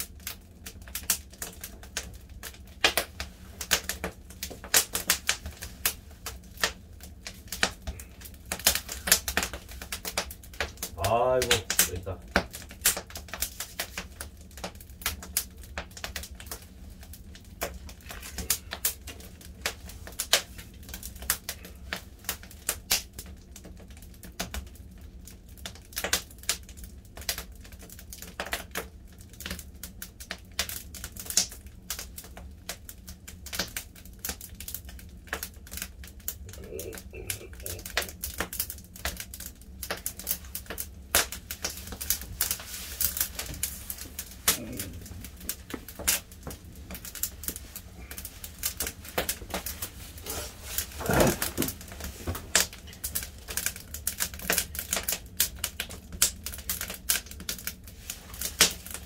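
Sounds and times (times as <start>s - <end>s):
firewood crackling and popping: 0.0s - 59.0s
steady low hum: 33.8s - 56.5s.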